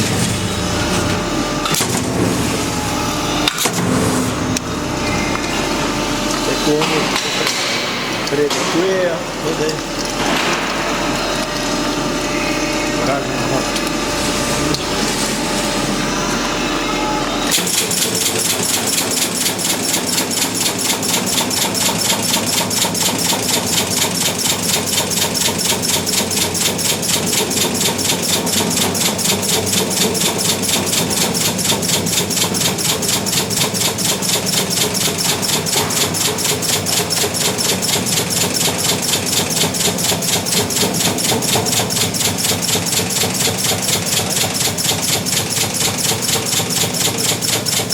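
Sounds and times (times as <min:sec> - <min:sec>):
rapid welding pulses: 0:17.5 - 0:47.9
welding machine hum: 0:17.5 - 0:47.9.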